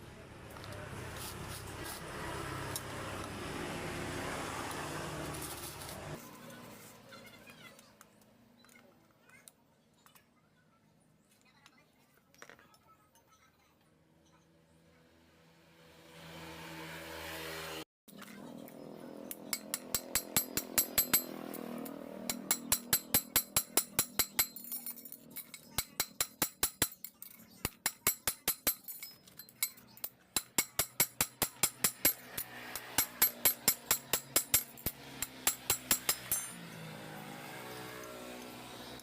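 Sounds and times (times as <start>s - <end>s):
rapid metallic clicking of hand tool: 19.3s - 36.6s.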